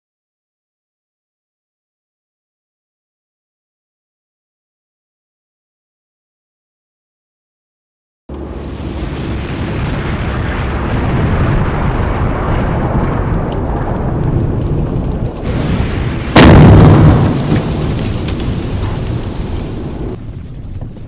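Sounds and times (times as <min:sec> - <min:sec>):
loud blast: 0:15.4 - 0:20.2.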